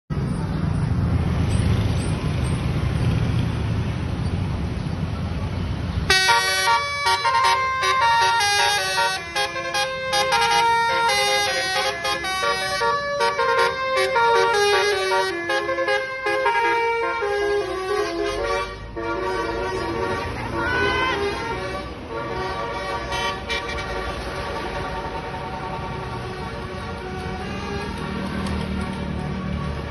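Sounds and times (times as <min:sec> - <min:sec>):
multi-trumpet bus horn melody: 0:06.1 - 0:28.4, 0:29.3 - 0:29.9
low vehicle rumble: 0:06.8 - 0:29.9.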